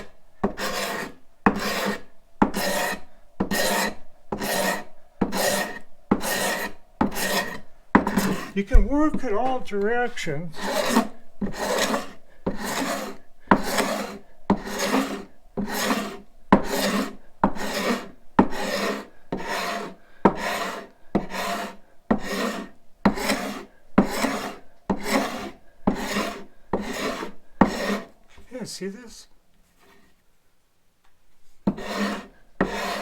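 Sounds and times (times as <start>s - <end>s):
hand scraper scraping wood: 0.0s - 28.2s, 29.7s - 30.2s, 31.6s - 33.0s.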